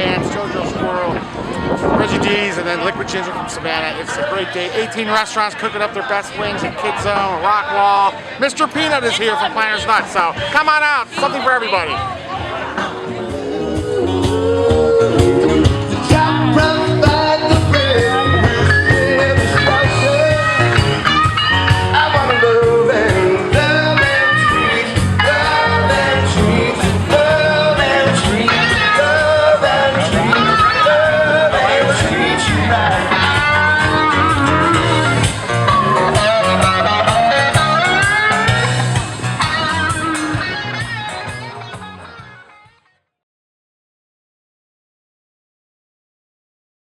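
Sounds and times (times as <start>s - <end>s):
drums keeping a steady beat: 9.8s - 42.7s
electric guitar: 12.4s - 42.9s
man singing: 13.1s - 38.6s.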